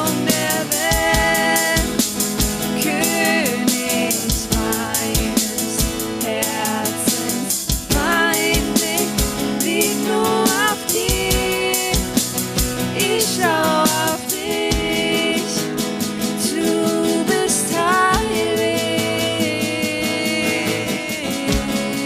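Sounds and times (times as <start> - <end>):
drum kit beat: 0.0 - 22.0
upbeat worship band music: 0.0 - 22.0.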